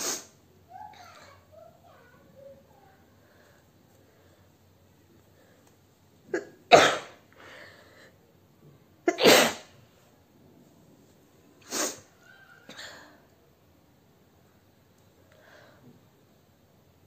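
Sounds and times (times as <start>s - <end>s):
woman sneezing: 11.7s - 13.2s.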